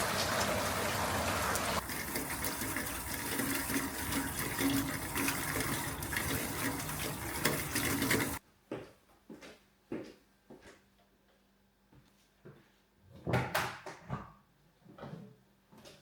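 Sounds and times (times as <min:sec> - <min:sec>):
water running from a tap: 0:00.0 - 0:08.4.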